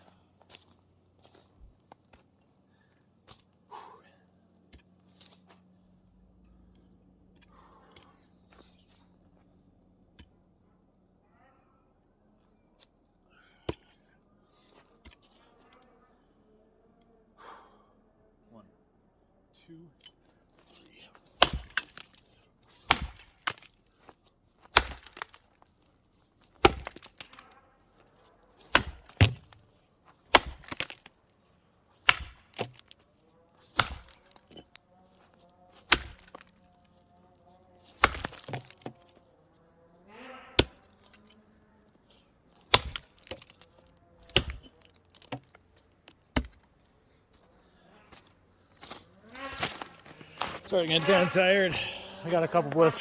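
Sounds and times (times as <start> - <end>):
axe chopping wood: 21.4 - 22.2, 22.8 - 23.9, 24.6 - 25.6, 26.5 - 27.5, 28.6 - 29.6, 30.3 - 31.2, 32.0 - 33.0, 33.7 - 34.8, 35.8 - 36.6, 37.9 - 39.0, 40.6 - 41.2, 42.6 - 43.6, 44.2 - 46.7, 48.1 - 53.0.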